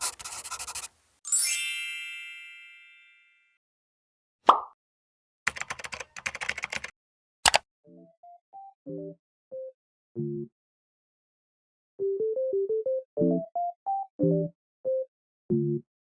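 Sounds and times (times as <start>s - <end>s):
bright ringing chime: 1.3s - 3.6s.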